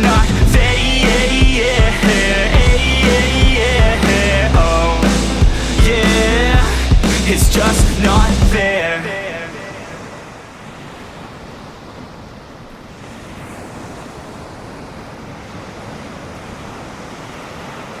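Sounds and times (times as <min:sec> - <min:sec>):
song: 0:00.0 - 0:09.0
ocean surf: 0:00.0 - 0:18.0.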